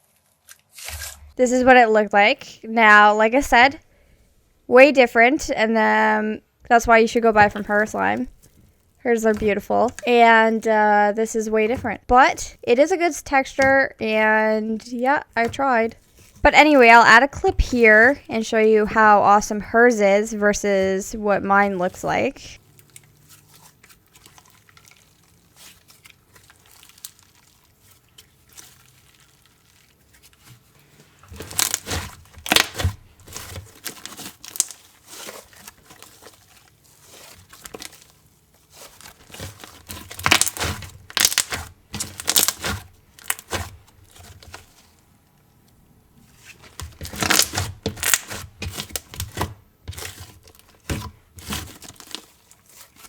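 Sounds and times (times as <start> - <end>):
quiet slime handling: 6.8 - 53.0.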